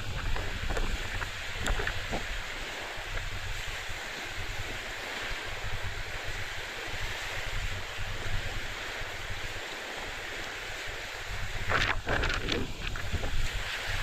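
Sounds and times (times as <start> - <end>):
wind rushing over microphone: 0.0 - 14.0.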